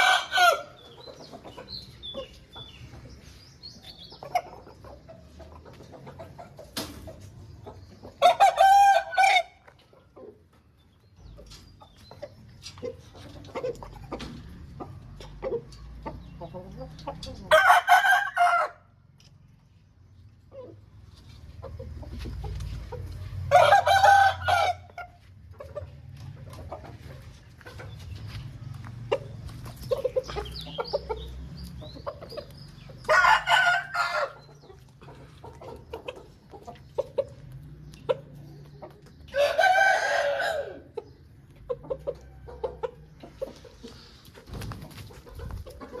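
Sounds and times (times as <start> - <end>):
roosters crowing: 0.0 - 1.1, 8.1 - 9.7, 17.4 - 19.0, 23.2 - 25.2, 32.8 - 34.7, 39.3 - 41.0
chickens clucking: 0.0 - 46.0.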